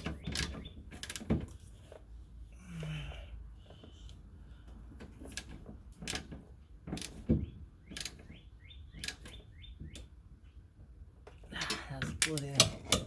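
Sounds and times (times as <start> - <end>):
birds chirping: 0.0 - 0.9, 7.4 - 10.7.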